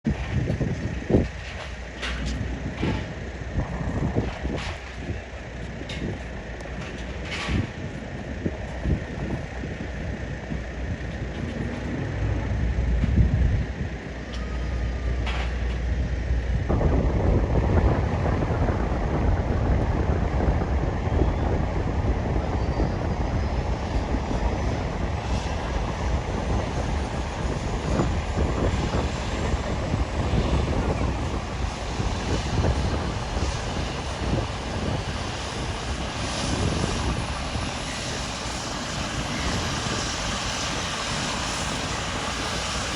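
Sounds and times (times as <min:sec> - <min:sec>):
helicopter turbine and rotor: 0:00.0 - 0:42.9
faint high whine rising in pitch: 0:11.4 - 0:33.2.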